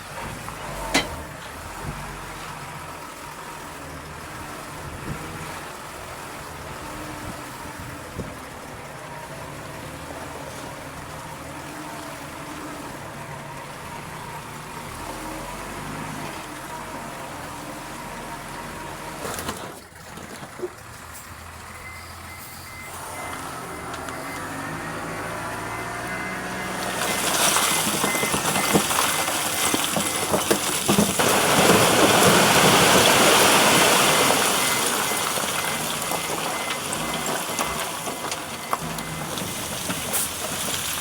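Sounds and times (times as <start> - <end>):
bulldozer diesel engine running: 0.0 - 41.0
metal knocks and clanks: 0.9 - 1.2.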